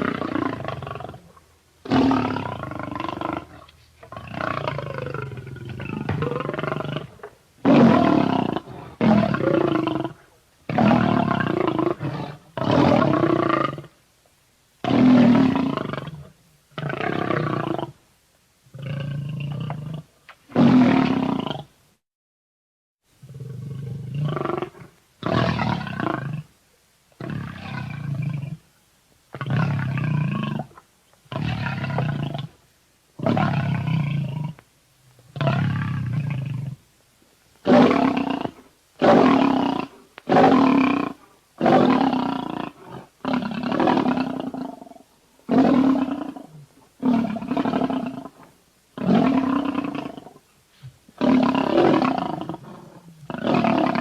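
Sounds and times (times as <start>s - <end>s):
dinosaur roars: 51.2s - 54.0s.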